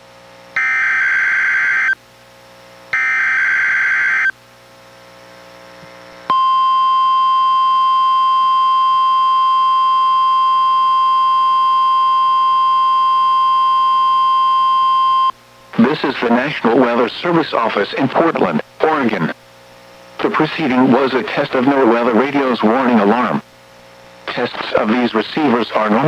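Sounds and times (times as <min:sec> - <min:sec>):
steady warning alarm tone: 0:00.6 - 0:02.0, 0:02.9 - 0:04.4, 0:06.3 - 0:17.1
warbling data screeches: 0:03.0 - 0:04.3.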